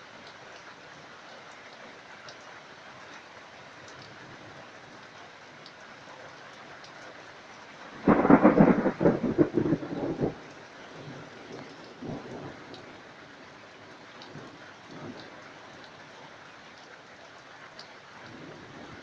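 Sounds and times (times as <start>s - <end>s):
heavy rain hissing: 7.9s - 15.6s
thunder clap: 8.0s - 10.4s
thunder rumble: 8.0s - 10.5s.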